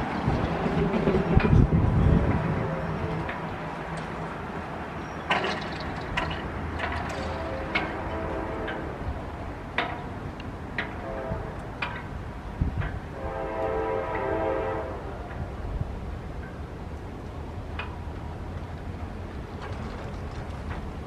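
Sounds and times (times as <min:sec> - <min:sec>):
low wind rumble: 0:00.0 - 0:21.0
locomotive air horn blast: 0:07.2 - 0:09.2, 0:11.0 - 0:11.7, 0:13.1 - 0:15.3.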